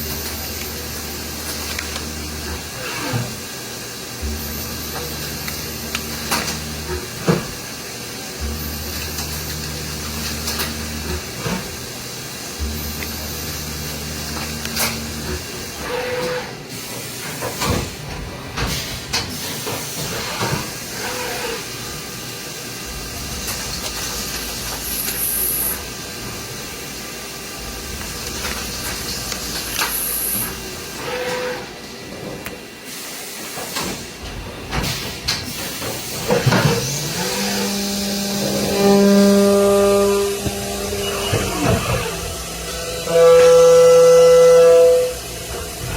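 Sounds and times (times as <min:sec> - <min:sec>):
motor whine: 0:00.0 - 0:16.5, 0:36.8 - 0:45.9.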